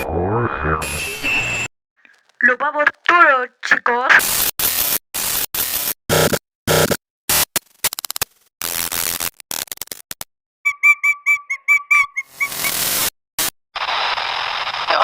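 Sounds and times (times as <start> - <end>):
radio static hiss: 2.4 - 4.2.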